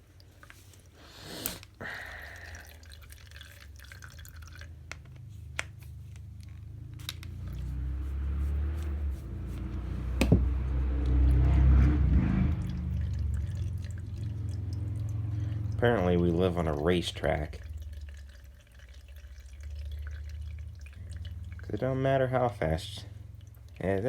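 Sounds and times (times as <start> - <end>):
vehicle speeding past: 6.8 - 17.6.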